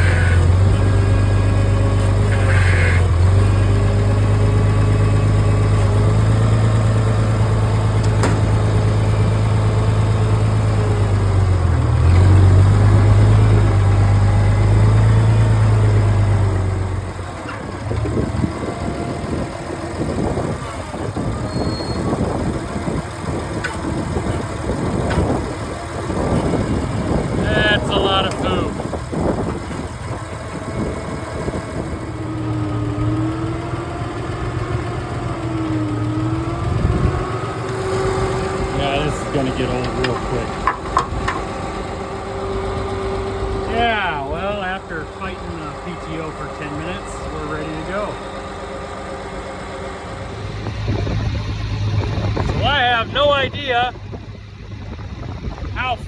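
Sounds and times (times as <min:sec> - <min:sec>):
tractor engine running: 0:00.0 - 0:56.0
irregular clatter: 0:05.6 - 0:09.4, 0:37.2 - 0:43.7.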